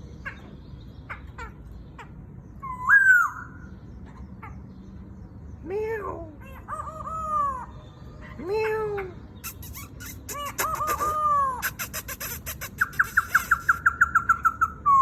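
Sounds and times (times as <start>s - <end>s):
sharp high bird chips: 9.4s - 13.8s.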